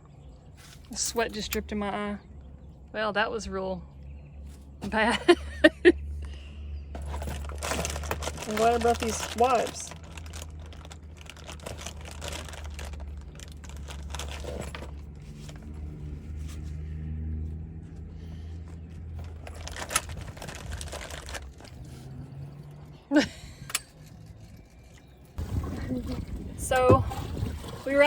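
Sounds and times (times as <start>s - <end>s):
rustling of things handled: 0.4s - 1.6s, 6.8s - 22.8s.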